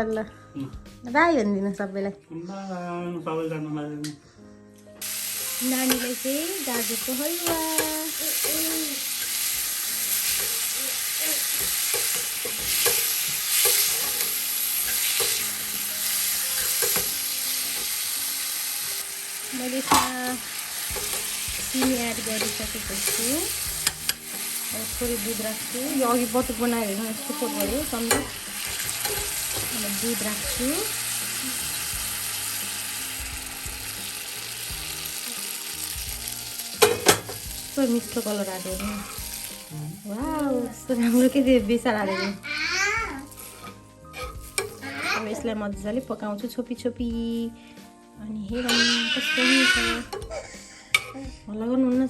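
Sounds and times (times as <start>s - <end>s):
carrots sizzling in a pan: 5.0s - 45.9s, 48.6s - 51.2s
stirring in a pan: 5.6s - 18.0s, 43.2s - 45.0s
spoon scraping a pan: 11.4s - 18.0s, 19.8s - 26.9s, 27.6s - 30.4s, 43.3s - 44.9s.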